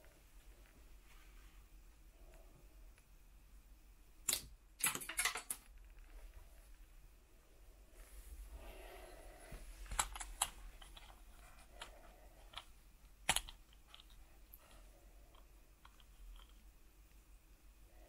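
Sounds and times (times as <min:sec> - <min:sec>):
plastic toy figures clicking: 0:12.5 - 0:14.2.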